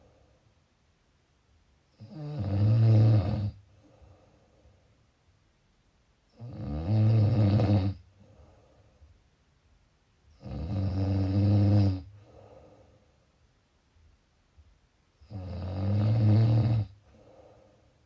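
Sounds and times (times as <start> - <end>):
low-pitched snores: 2.0 - 3.6, 6.3 - 8.1, 10.4 - 12.4, 15.2 - 17.8
soft breath: 3.6 - 5.4, 8.0 - 9.4, 12.0 - 14.7, 16.9 - 18.0.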